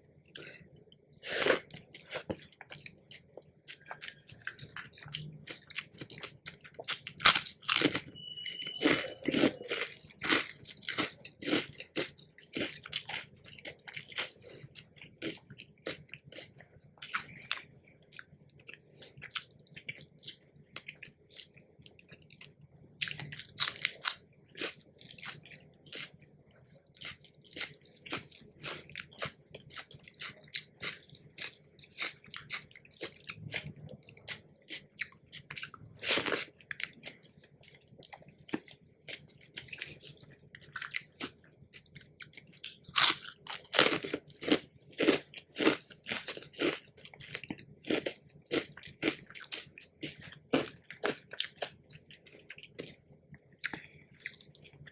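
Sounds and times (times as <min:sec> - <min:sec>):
steady chewing: 0:00.2 - 0:08.1, 0:08.7 - 0:54.9
crunchy bites: 0:06.9 - 0:08.1, 0:42.9 - 0:46.8.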